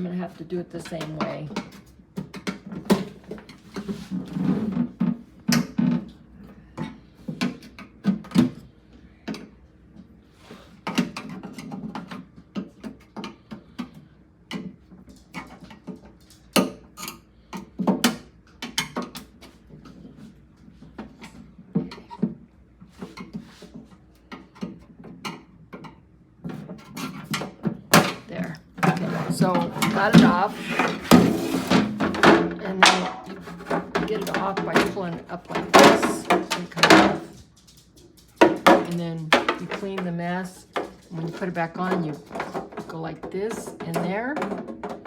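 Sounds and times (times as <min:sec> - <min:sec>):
plastic scraping: 0:26.8 - 0:37.4.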